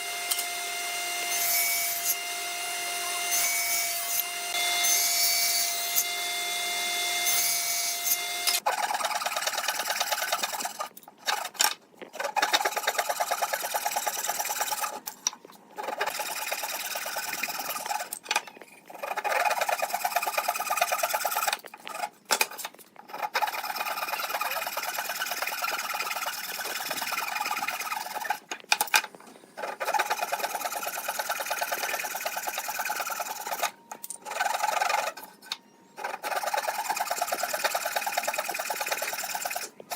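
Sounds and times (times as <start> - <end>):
tool sawing or rasping wood: 7.2 - 15.1, 15.8 - 18.2, 18.9 - 28.6, 29.6 - 35.4, 36.0 - 39.9.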